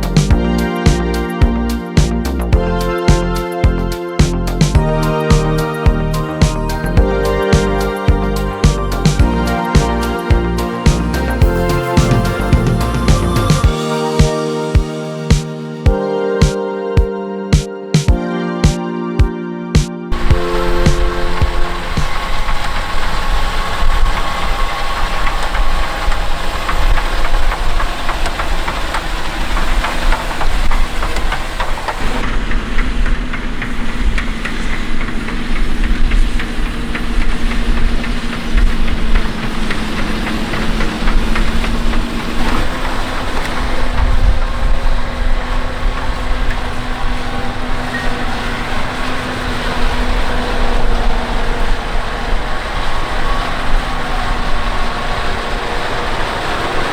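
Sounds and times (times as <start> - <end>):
tractor diesel engine rumbling: 0.0 - 14.2, 20.2 - 56.9.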